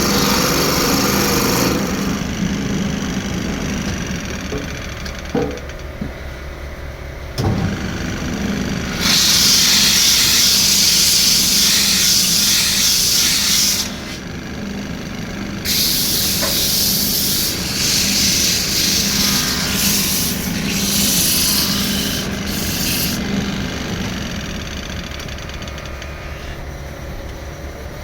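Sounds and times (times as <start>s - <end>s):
lathe humming: 0.0s - 28.0s
knock: 4.5s - 6.2s
loud hiss: 9.0s - 14.2s, 15.7s - 23.2s.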